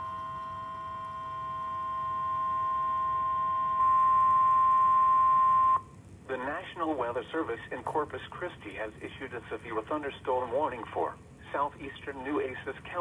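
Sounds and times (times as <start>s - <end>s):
steady high alarm tone: 0.0s - 6.0s.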